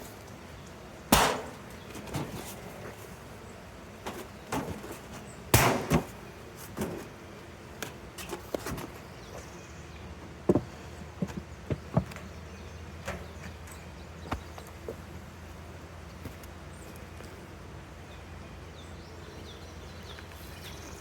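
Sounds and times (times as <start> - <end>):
wooden beehive parts knocking: 10.2 - 12.4.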